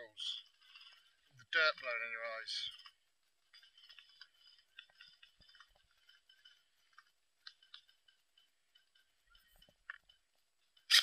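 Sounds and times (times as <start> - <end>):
faint small ticks: 2.7 - 10.9.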